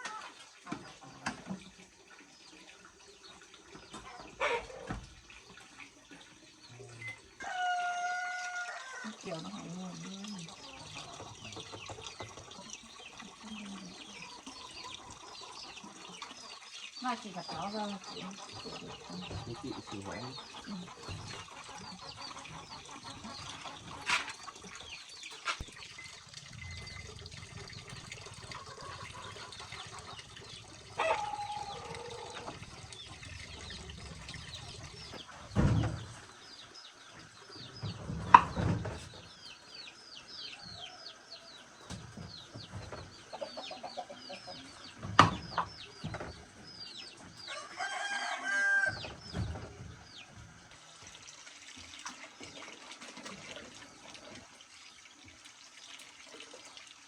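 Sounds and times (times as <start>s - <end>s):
chickens clucking: 0.0s - 51.0s
small birds chirping: 8.6s - 51.2s.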